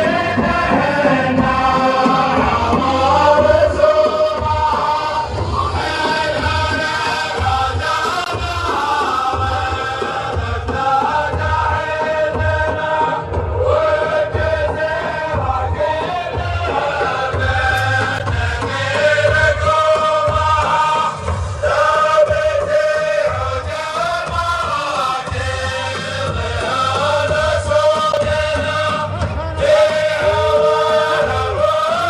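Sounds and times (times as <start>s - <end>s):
men's choir chanting: 0.0s - 32.0s.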